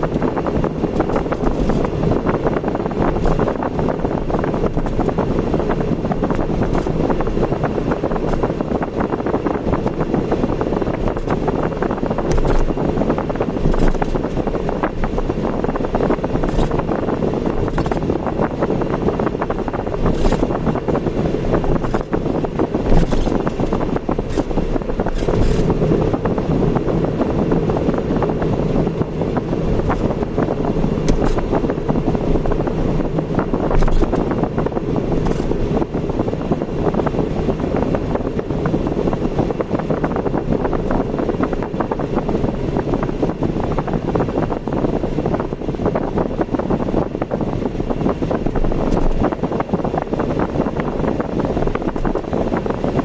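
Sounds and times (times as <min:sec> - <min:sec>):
car road and engine noise: 0:00.0 - 0:53.0.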